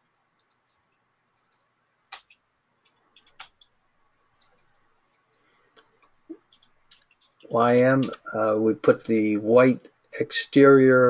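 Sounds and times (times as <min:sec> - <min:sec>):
computer mouse clicks: 0:00.4 - 0:03.8, 0:04.4 - 0:08.2.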